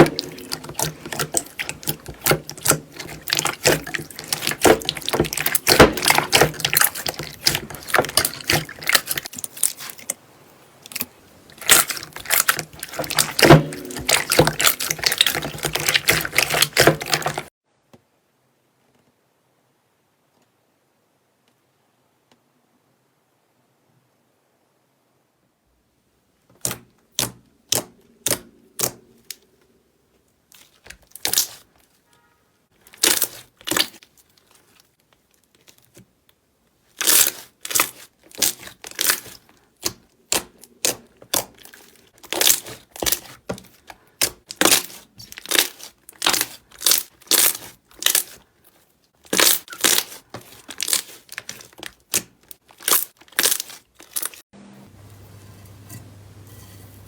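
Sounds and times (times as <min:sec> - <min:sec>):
slime crackling and popping: 0:00.0 - 0:10.2, 0:10.9 - 0:17.5, 0:30.6 - 0:31.6, 0:32.8 - 0:34.5, 0:36.9 - 0:48.5, 0:49.2 - 0:54.4.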